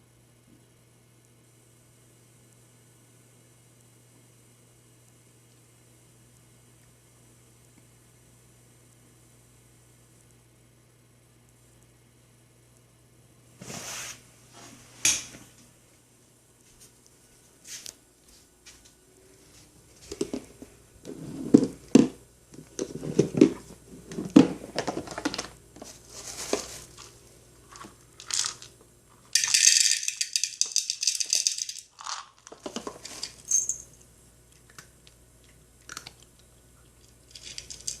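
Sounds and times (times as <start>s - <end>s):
dry cat food rattling into bowl: 26.4s - 28.7s, 29.3s - 33.9s, 37.1s - 38.0s.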